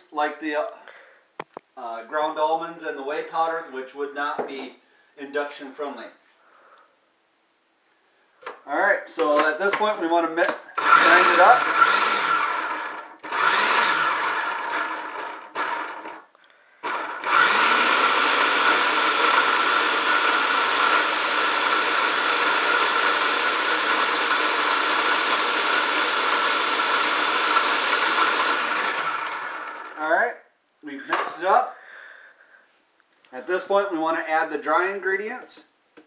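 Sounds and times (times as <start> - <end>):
food processor whining: 10.8 - 30.0.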